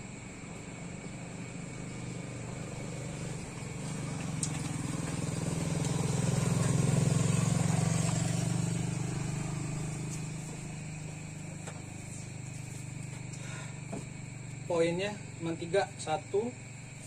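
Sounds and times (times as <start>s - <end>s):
vehicle engine approaching: 0.0s - 17.0s.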